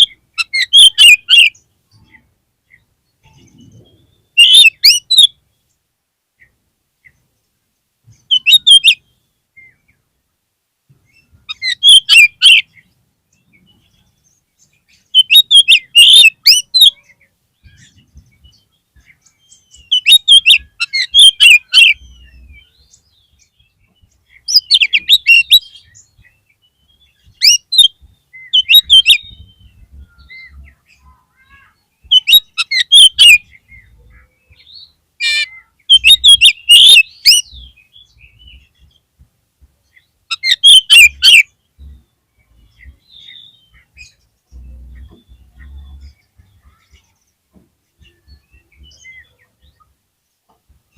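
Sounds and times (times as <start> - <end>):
bird sharp chattering calls: 0.0 - 5.3, 8.2 - 9.0, 11.5 - 12.8, 15.0 - 18.0, 19.0 - 22.7, 24.3 - 26.0, 27.3 - 38.8, 39.9 - 42.1.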